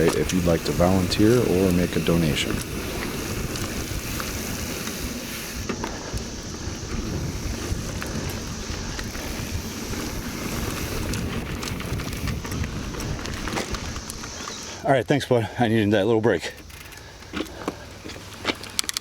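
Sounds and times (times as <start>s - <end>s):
bike clicks and rattles: 0.0s - 14.8s, 16.3s - 19.0s
wind buffeting microphone: 0.0s - 14.8s
high hiss of cicadas: 0.0s - 19.0s.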